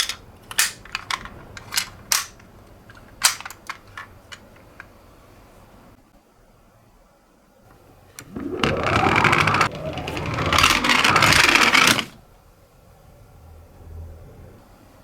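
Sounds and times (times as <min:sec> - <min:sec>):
toy car wheels rolling and rattling: 0:00.0 - 0:04.6, 0:08.2 - 0:12.2.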